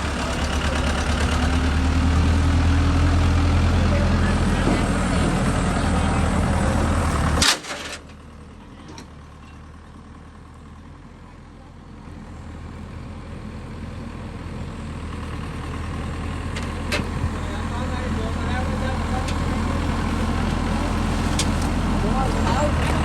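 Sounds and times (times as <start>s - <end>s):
excavator engine running: 0.0s - 23.0s.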